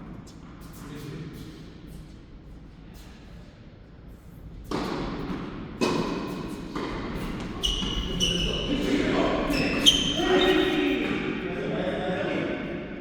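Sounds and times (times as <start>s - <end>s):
court shoes squeaking: 4.7s - 11.4s.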